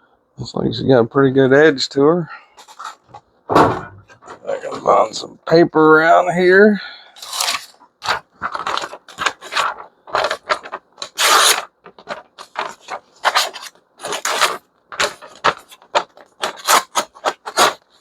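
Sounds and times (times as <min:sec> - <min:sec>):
knife slicing through paper: 0:07.2 - 0:17.8.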